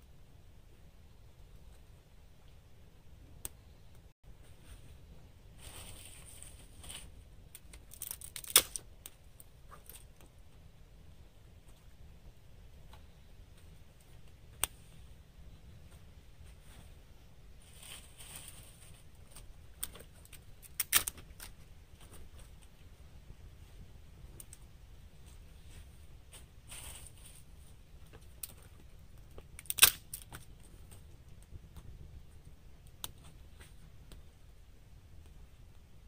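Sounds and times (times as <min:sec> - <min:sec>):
sharp pops and snaps: 0:07.5 - 0:10.3, 0:28.1 - 0:34.3
campfire crackling: 0:17.5 - 0:34.4.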